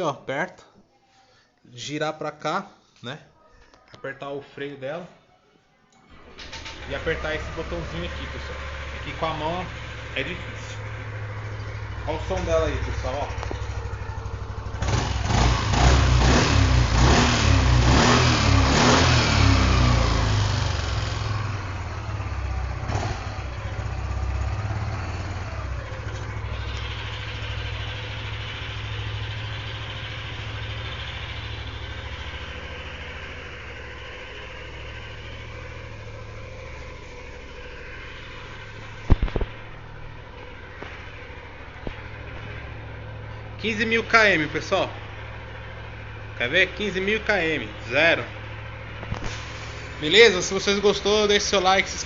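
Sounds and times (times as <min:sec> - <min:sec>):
scooter engine revving and idling: 0:06.2 - 0:52.0.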